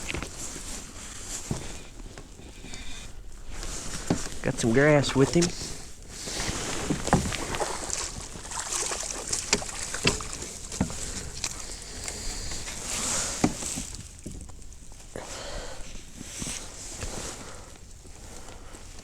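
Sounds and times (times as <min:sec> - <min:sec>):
knocks and rustling on kayak: 0:00.0 - 0:15.1.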